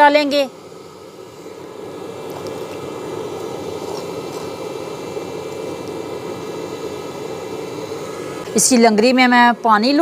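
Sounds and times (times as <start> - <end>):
water heating in a pot: 0.0 - 10.0.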